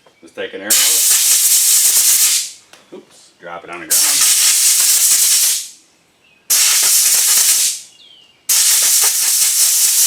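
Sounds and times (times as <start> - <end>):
air hose blasts hissing: 0.7 - 2.6, 3.9 - 5.8, 6.5 - 7.9, 8.5 - 10.0.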